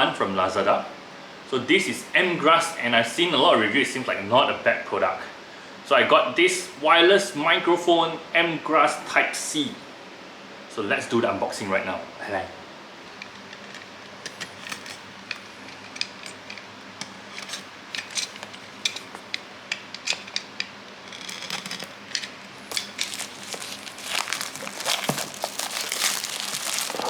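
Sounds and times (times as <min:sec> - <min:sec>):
packaging crinkling and rustling: 0:21.1 - 0:27.0
packaging clicks and taps: 0:21.4 - 0:27.0.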